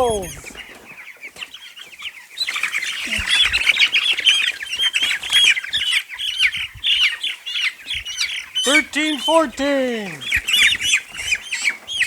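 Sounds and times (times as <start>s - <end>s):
chicks peeping and squawking: 0.0s - 8.9s.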